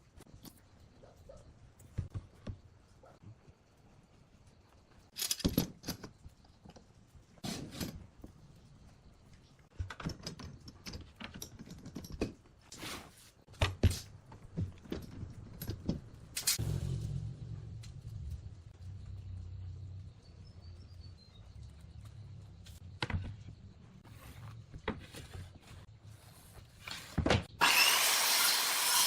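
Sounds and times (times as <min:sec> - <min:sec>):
wood and tools knocking and rattling: 0:05.2 - 0:08.4, 0:09.7 - 0:12.7, 0:13.5 - 0:16.3.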